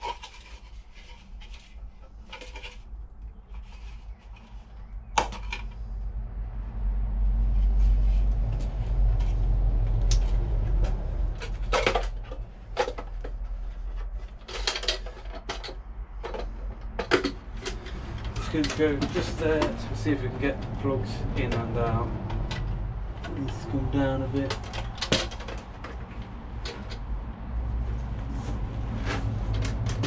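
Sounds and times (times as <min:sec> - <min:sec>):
low rumble: 0:04.8 - 0:14.2, 0:15.8 - 0:30.0.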